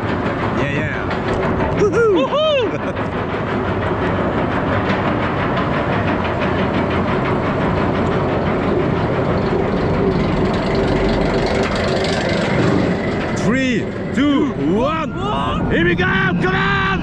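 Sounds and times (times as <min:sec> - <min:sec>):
rapid steady clicking: 0:00.0 - 0:02.0, 0:02.9 - 0:15.1
lift chain rattling: 0:00.0 - 0:16.5
rumble of coaster train: 0:00.0 - 0:17.0.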